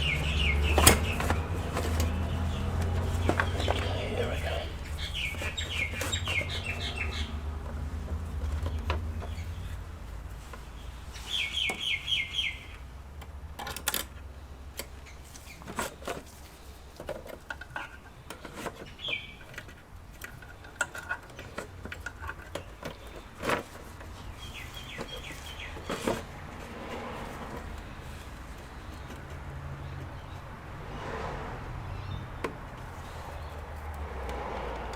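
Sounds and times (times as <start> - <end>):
hard parts clicking and knocking: 0.0 - 10.7, 13.2 - 30.4.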